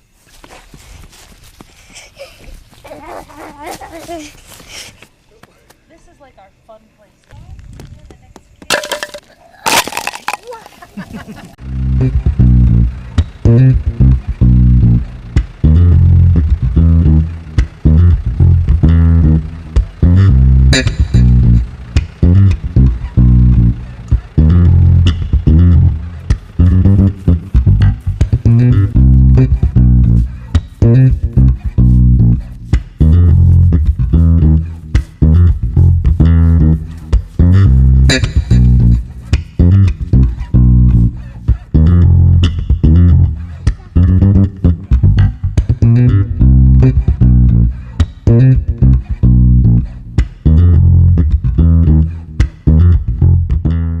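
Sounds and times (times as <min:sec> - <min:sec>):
bass and plucked guitar music: 0:11.6 - 0:54.0.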